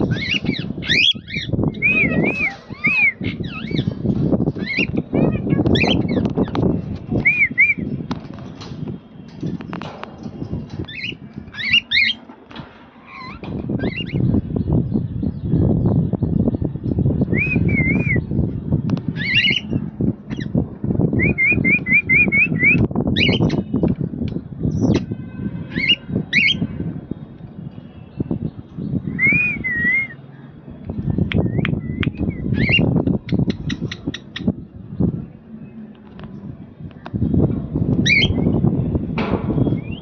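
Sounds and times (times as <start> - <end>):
cockatiels whistling and chirping: 0.0 - 3.9, 4.6 - 5.0, 10.9 - 12.2, 13.1 - 14.2, 21.2 - 23.6, 25.8 - 26.6, 31.8 - 34.5, 38.0 - 38.5
low rumbling noise: 26.2 - 40.0.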